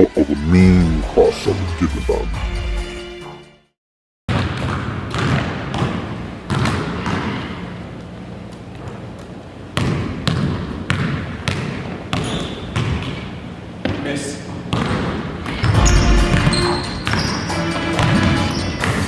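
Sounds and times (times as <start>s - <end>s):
basketball bouncing on a court: 4.3s - 7.4s, 9.8s - 14.0s, 14.7s - 17.4s.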